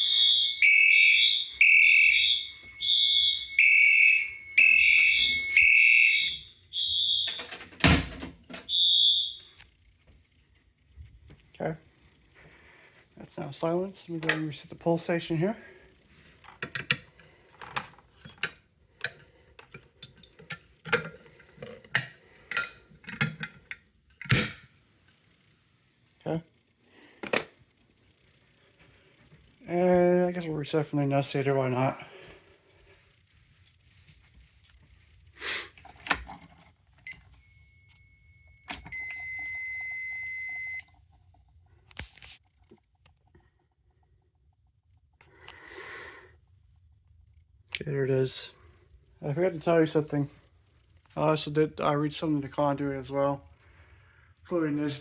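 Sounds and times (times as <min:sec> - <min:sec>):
fire alarm beeping: 0:00.0 - 0:09.7, 0:37.1 - 0:41.1
clicks and handling noises: 0:16.2 - 0:25.2, 0:35.7 - 0:38.0.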